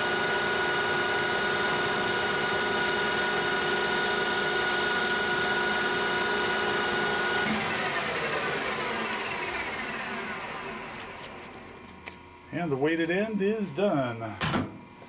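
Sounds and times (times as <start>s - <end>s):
metal lathe whine spinning down: 0.0s - 11.0s.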